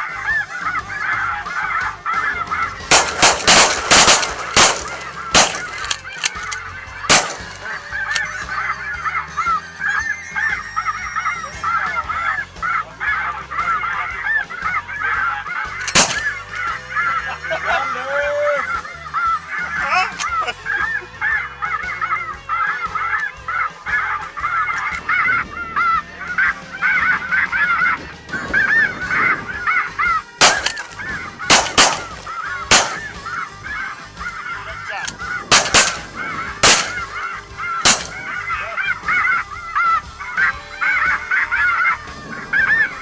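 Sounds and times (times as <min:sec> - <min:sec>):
geese honking: 0:00.0 - 0:43.0
shotgun shots: 0:02.9 - 0:06.5, 0:07.1 - 0:07.7, 0:15.8 - 0:16.4, 0:30.4 - 0:33.4, 0:35.0 - 0:37.2, 0:37.8 - 0:38.5.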